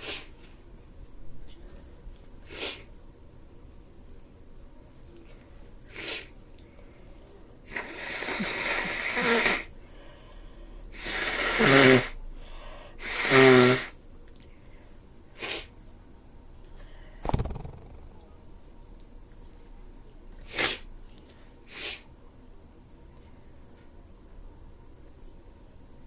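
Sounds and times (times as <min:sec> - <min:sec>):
long noisy breath: 0:05.9 - 0:13.9.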